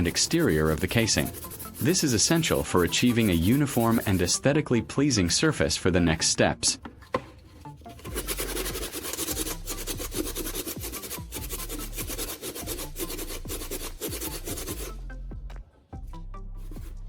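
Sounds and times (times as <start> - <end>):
sandpaper rubbing on plastic: 0.0 - 4.4, 7.7 - 15.0, 16.6 - 17.0.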